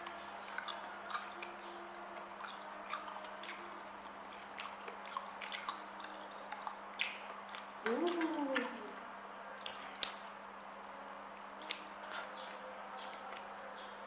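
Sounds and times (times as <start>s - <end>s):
person chewing wetly: 0.0s - 8.9s.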